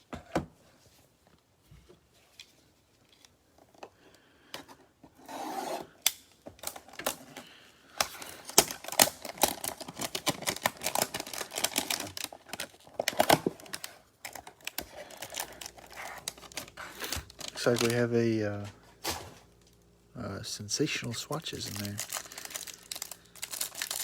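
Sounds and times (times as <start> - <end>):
cardboard box scrape: 5.2 - 5.9
plastic wrapping crackling: 6.6 - 18.7, 21.2 - 24.0.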